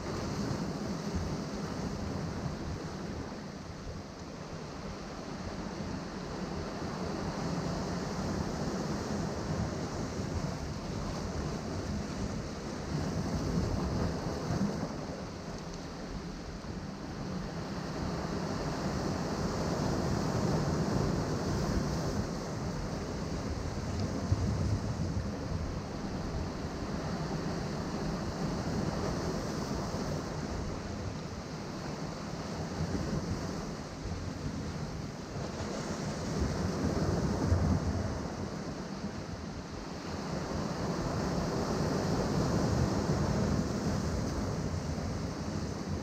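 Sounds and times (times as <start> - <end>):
ocean waves breaking on rocks: 17.9 - 46.0.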